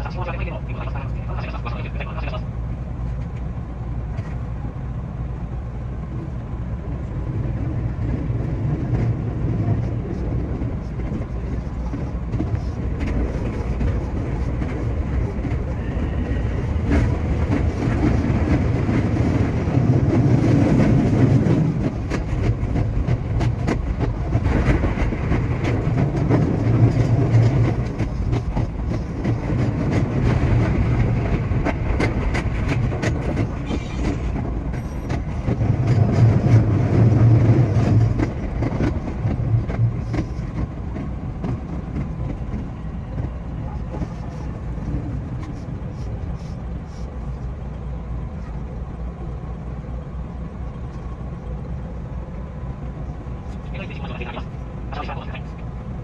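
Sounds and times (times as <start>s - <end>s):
electric train rumbling on track: 0.0s - 56.0s
sharp clicks from rails: 7.9s - 46.8s.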